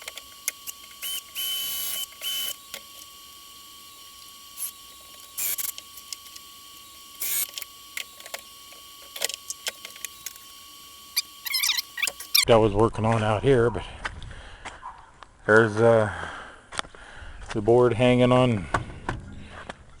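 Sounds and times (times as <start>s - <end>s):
short noise bursts: 4.2s - 6.4s, 11.1s - 12.5s.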